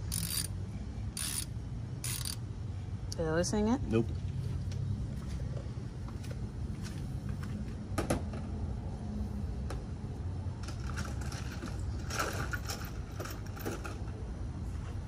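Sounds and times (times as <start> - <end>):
hand tools clicking and rattling: 0.0 - 0.6, 1.2 - 2.4, 10.6 - 14.2.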